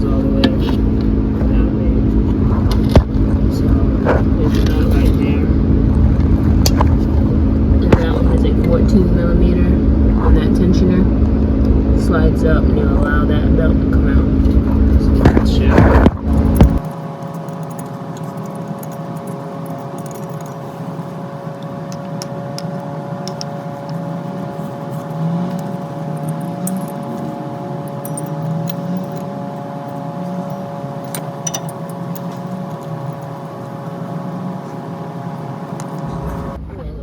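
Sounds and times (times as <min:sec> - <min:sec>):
steady humming drone: 0:00.0 - 0:37.0
wrench clinking on metal: 0:21.9 - 0:33.4.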